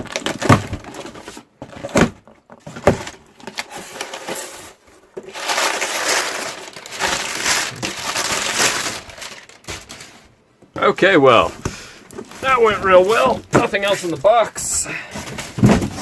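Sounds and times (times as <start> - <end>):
cardboard tearing and crunching: 0.0 - 10.2, 12.2 - 14.4, 15.1 - 16.0
knocks and scrapes on a box: 15.1 - 16.0.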